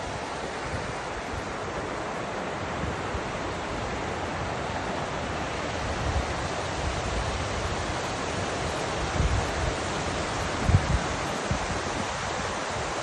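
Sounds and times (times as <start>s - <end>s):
waterfall rushing: 0.0s - 13.0s
wind buffeting microphone: 5.7s - 13.0s.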